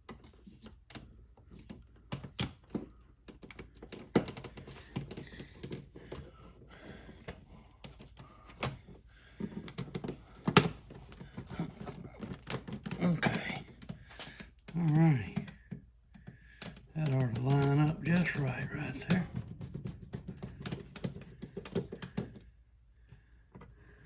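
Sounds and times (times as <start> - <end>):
screwdriver on plastic light switch: 16.6 - 22.4.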